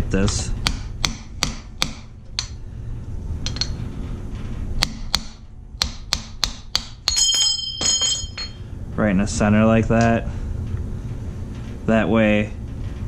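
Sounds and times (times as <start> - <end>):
hammer tapping metal: 0.2 - 2.6, 3.4 - 3.8, 4.8 - 8.6.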